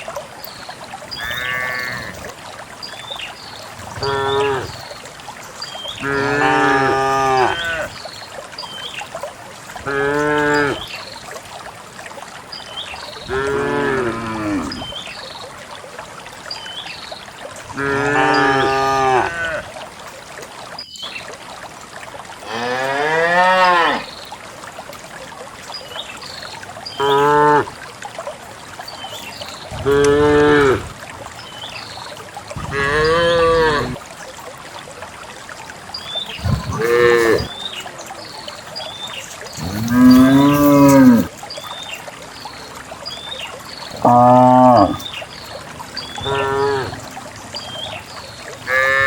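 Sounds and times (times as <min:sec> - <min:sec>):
cows mooing: 0:01.2 - 0:02.3, 0:04.0 - 0:04.7, 0:06.0 - 0:07.9, 0:17.8 - 0:19.6, 0:22.4 - 0:24.1, 0:29.8 - 0:30.9, 0:32.6 - 0:34.0, 0:36.4 - 0:37.5, 0:39.6 - 0:41.3, 0:44.0 - 0:45.0, 0:46.2 - 0:47.0, 0:48.7 - 0:49.0.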